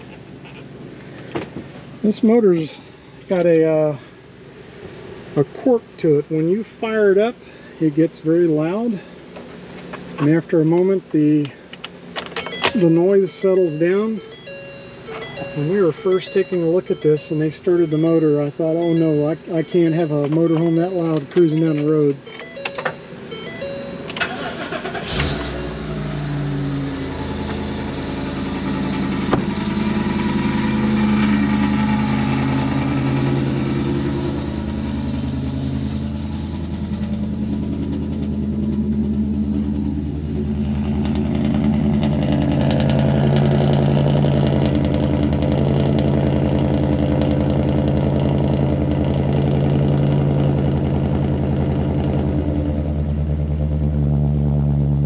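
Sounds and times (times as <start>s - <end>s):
engine cranking and idling: 11.4s - 54.8s.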